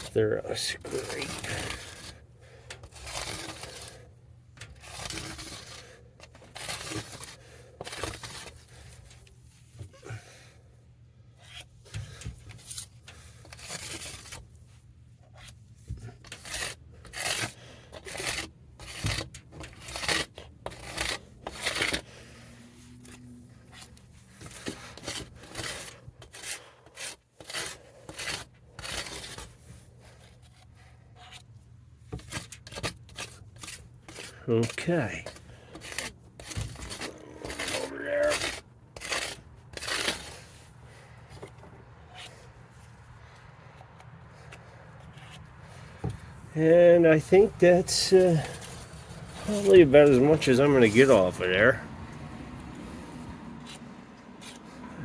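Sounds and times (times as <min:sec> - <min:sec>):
scraping strokes on metal panel: 0:15.3 - 0:31.5, 0:32.1 - 0:40.7.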